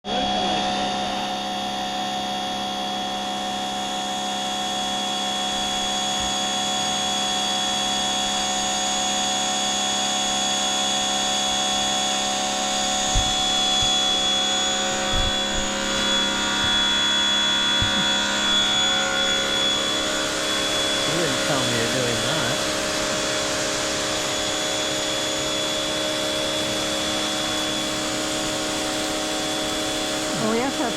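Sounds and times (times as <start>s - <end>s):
pressure washer running: 0.1s - 30.9s
low bumps: 12.7s - 20.4s.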